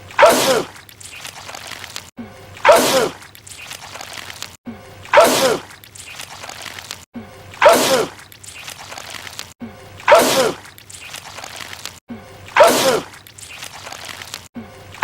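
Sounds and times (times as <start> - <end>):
man sneezing loudly: 10.1 - 10.6, 12.6 - 13.1.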